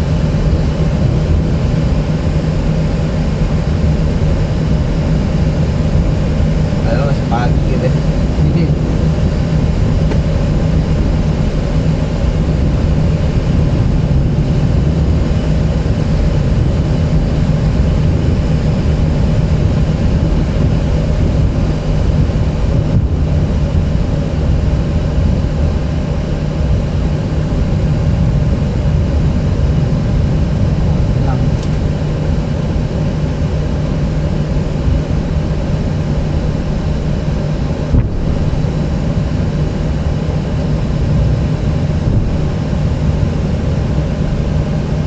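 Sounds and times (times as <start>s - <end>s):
jet engines drone: 0.0s - 45.0s
rushing air: 6.7s - 12.7s.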